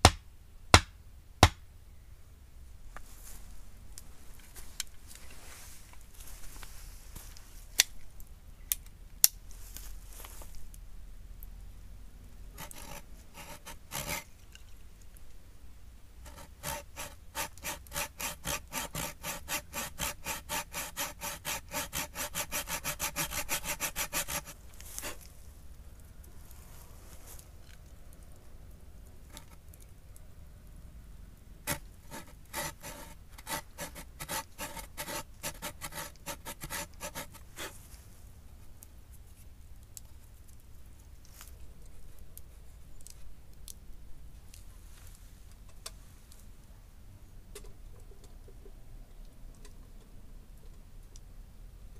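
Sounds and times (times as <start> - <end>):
hand saw cutting wood: 12.6 - 14.3, 16.3 - 25.2, 31.7 - 37.7.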